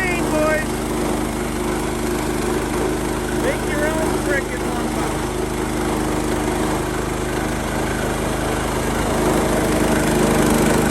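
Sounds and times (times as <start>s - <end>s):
small gasoline engine running: 0.0s - 10.9s.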